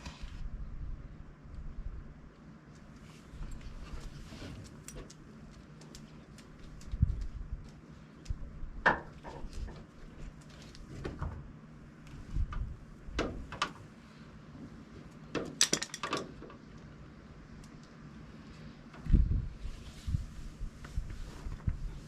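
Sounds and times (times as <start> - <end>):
hand tools and hardware clicking: 15.4 - 16.4.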